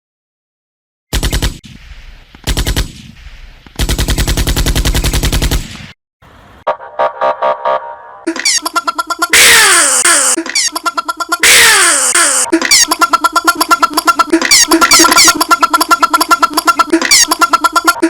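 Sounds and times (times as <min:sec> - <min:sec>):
machine-gun fire: 0:01.1 - 0:06.0
electronic music with synth tones: 0:07.6 - 0:18.0.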